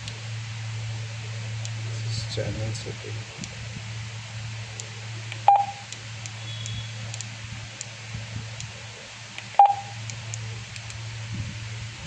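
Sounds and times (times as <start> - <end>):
low hum: 0.0 - 12.0
electronic key beeps: 5.5 - 5.9, 9.6 - 10.0.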